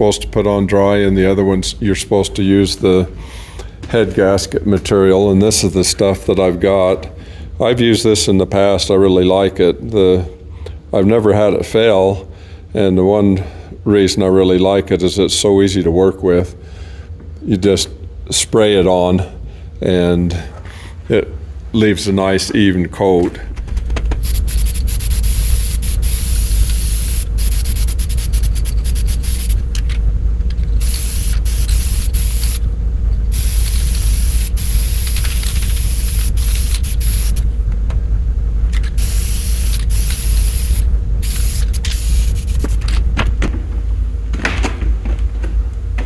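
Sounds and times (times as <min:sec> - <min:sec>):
low rumble: 0:23.4 - 0:44.2
aerosol can hissing: 0:24.2 - 0:29.7, 0:30.8 - 0:32.6, 0:33.3 - 0:37.5, 0:38.9 - 0:42.8.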